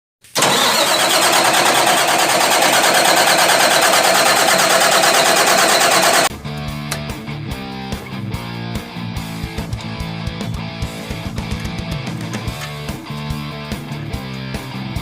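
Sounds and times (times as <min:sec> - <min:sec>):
boat engine cranking on starter: 0:00.3 - 0:06.3.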